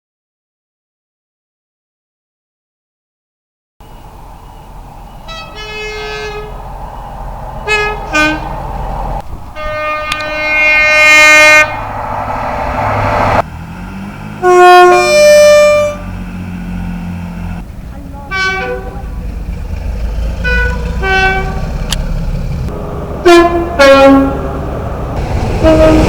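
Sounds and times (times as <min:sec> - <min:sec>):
train engine and rail noise: 0:03.8 - 0:26.0
two-tone horn: 0:05.2 - 0:06.6, 0:07.6 - 0:08.6, 0:09.6 - 0:13.2, 0:14.4 - 0:16.1, 0:18.3 - 0:19.1, 0:20.4 - 0:21.9, 0:23.2 - 0:24.6, 0:25.6 - 0:26.0
train horn blasts: 0:05.2 - 0:06.7, 0:07.6 - 0:08.6, 0:09.6 - 0:13.4, 0:14.4 - 0:16.1, 0:18.3 - 0:19.1, 0:20.4 - 0:21.9, 0:23.2 - 0:24.6, 0:25.5 - 0:26.0.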